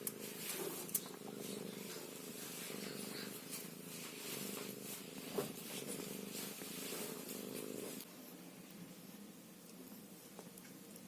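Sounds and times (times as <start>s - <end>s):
cat purring: 0.0s - 8.1s.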